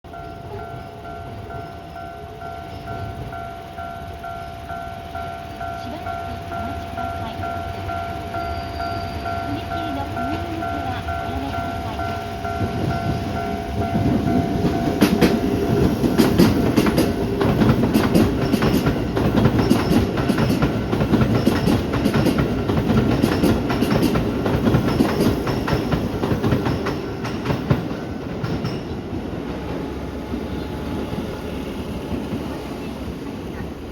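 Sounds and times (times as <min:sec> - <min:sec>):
level crossing bell ringing: 0:00.1 - 0:16.4
train rumble: 0:00.1 - 0:33.9
train wheels clicking over rail joints: 0:00.1 - 0:33.9.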